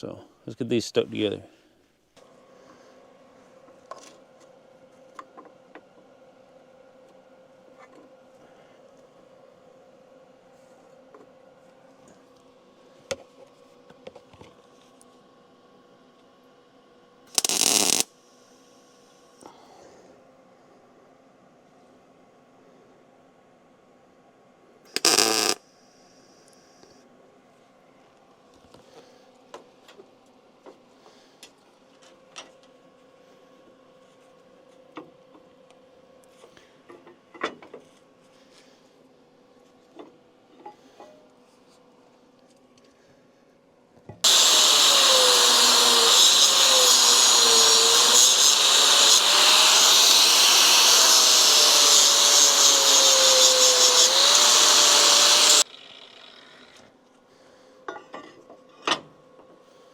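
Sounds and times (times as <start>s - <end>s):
welding arc crackling: 17.3s - 18.1s, 25.0s - 25.6s, 44.2s - 55.6s.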